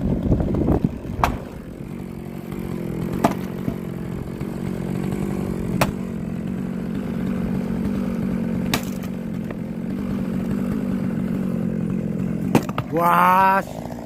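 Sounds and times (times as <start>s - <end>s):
small gasoline engine running: 0.0s - 14.0s
sharp knocks: 0.5s - 1.6s, 3.1s - 3.8s, 5.7s - 6.0s, 8.7s - 9.6s, 12.5s - 13.0s.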